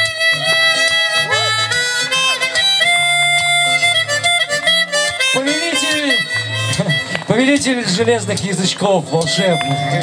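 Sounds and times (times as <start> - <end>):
harmonica playing: 0.0 - 8.4.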